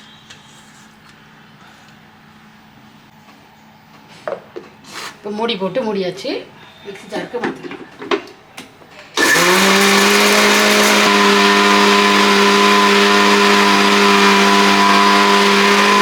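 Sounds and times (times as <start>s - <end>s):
mixer grinder motor whining: 9.2s - 16.0s.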